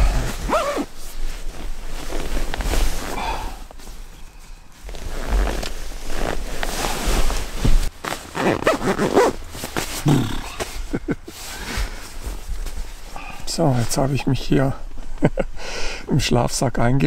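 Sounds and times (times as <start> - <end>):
sleeping bag rustling: 0.0 - 14.0
person grunting: 10.0 - 10.7.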